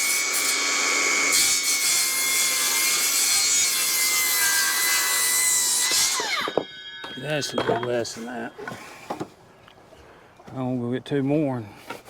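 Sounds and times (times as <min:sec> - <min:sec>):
power saw cutting wood: 0:00.0 - 0:09.2.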